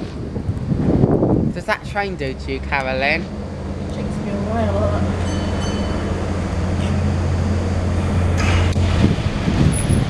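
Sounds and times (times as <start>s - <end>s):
large vehicle droning: 0.0s - 10.0s
high ping: 2.8s - 8.8s.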